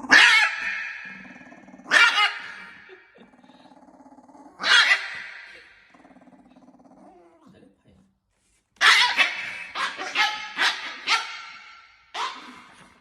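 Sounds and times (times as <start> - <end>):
dog barking: 0.0 - 1.2, 1.9 - 2.8, 4.6 - 5.6, 8.8 - 13.0
dog growling: 0.0 - 8.0.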